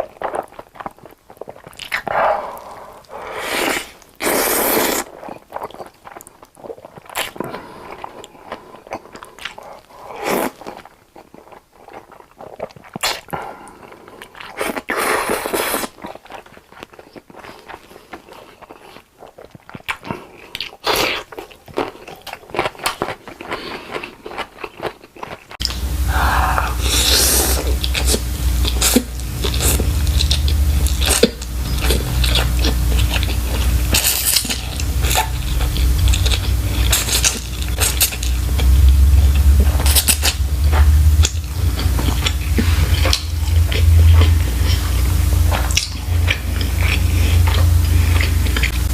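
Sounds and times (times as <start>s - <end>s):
chewing and crunching: 0.0s - 48.9s
heavy low rumble: 25.6s - 48.9s
steady hum: 25.6s - 48.9s.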